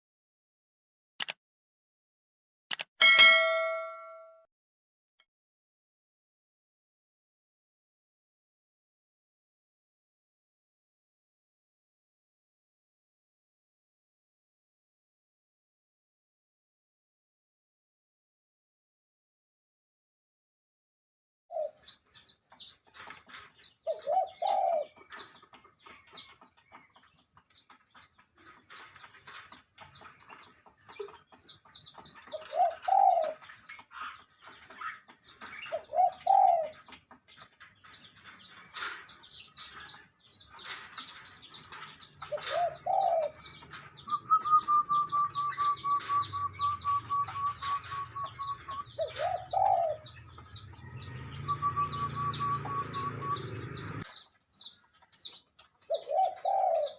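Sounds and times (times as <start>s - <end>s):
sharp clicks: 1.2s - 1.4s, 2.7s - 2.9s
flock of birds chirping: 21.5s - 56.9s
low rising bird call: 44.0s - 54.0s.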